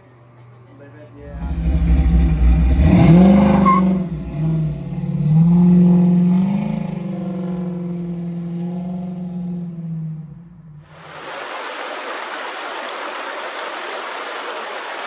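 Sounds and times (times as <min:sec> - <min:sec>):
vehicle engine revving: 0:01.2 - 0:10.9.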